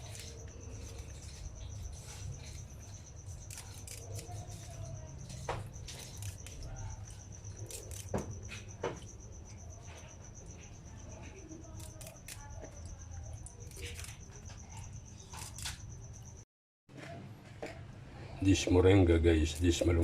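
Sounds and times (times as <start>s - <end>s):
stems snapping: 3.4s - 4.6s.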